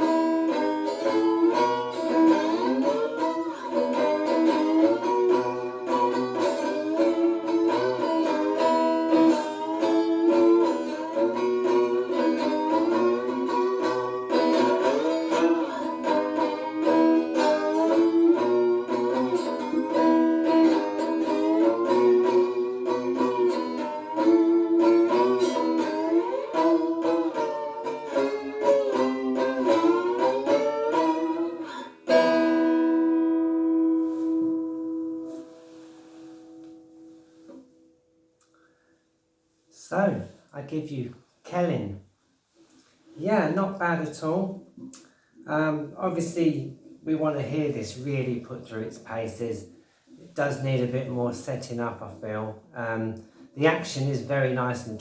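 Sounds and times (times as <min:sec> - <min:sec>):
electric slide guitar: 0:00.0 - 0:35.8.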